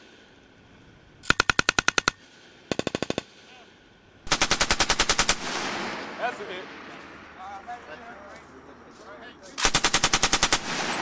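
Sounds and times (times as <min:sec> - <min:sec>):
machine gun automatic fire: 0:01.2 - 0:03.4, 0:04.3 - 0:06.0, 0:09.6 - 0:11.0
gunfire echo: 0:04.3 - 0:07.1, 0:09.6 - 0:11.0.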